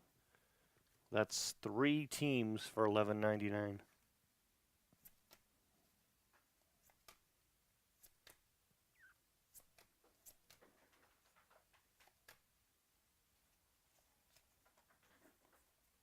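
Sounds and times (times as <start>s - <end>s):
trading cards clicking and sliding: 5.0s - 5.5s, 6.7s - 7.3s, 8.0s - 12.5s, 14.0s - 15.7s.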